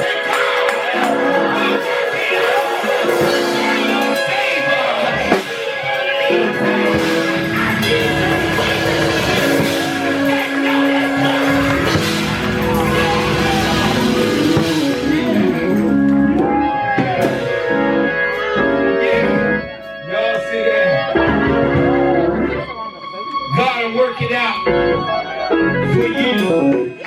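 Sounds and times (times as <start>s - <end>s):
person singing: 0.0s - 22.9s
organ chords: 0.0s - 27.0s
drums and cymbals: 5.1s - 17.7s.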